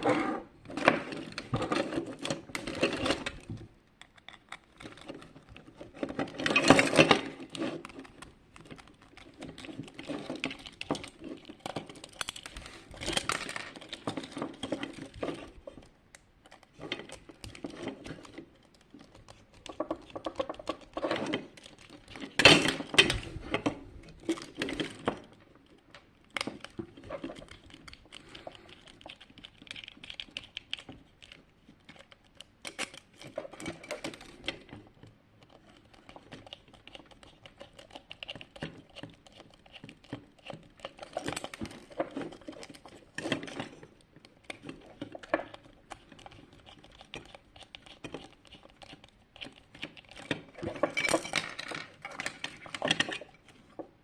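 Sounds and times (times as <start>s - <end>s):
hard plastic parts clattering: 50.3s - 53.9s.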